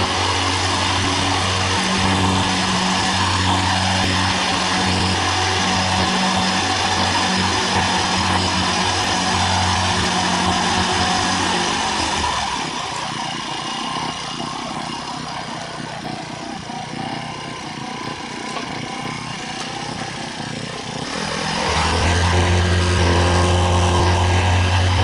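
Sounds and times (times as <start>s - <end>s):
heavy machinery engine running: 0.0s - 25.0s.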